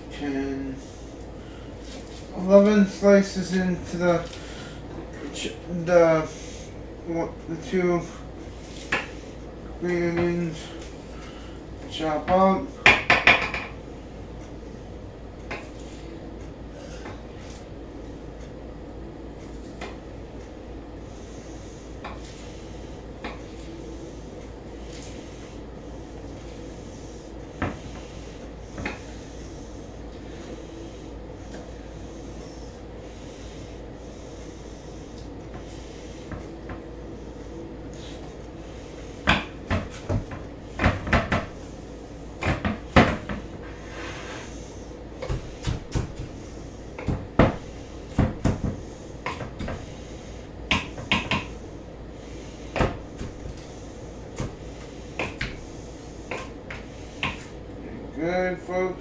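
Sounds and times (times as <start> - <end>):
knife chopping on cutting board: 39.2 - 41.6, 42.4 - 43.4, 45.2 - 46.4, 47.0 - 49.8, 50.7 - 51.6, 52.7 - 53.6, 54.3 - 55.6, 56.3 - 57.5.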